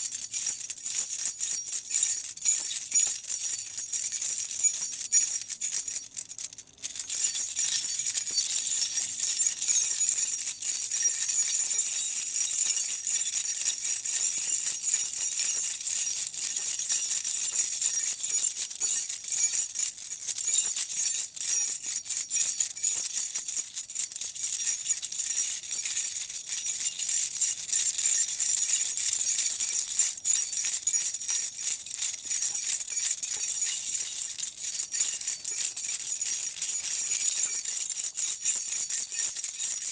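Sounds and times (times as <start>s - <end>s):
keys jangling: 0.0s - 11.8s, 37.2s - 39.9s.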